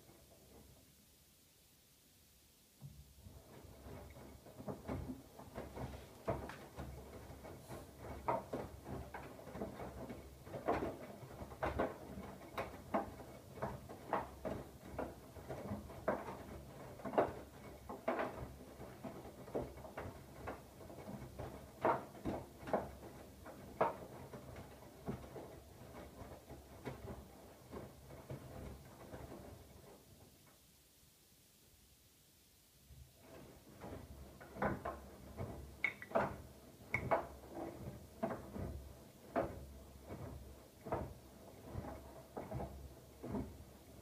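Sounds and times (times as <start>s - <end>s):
washing machine motor hum: 32.9s - 44.0s.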